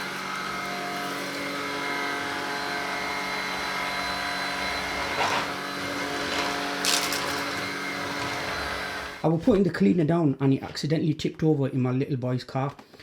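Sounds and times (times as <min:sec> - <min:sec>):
stick vacuum running: 0:00.0 - 0:09.2
vacuum knocking on floor: 0:05.0 - 0:09.1.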